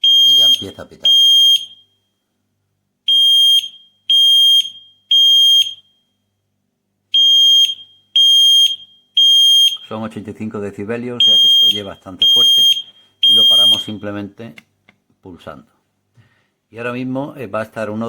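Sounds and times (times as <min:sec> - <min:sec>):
smoke detector beeping: 0:00.0 - 0:02.0, 0:03.1 - 0:06.0, 0:07.2 - 0:10.0, 0:11.2 - 0:14.1.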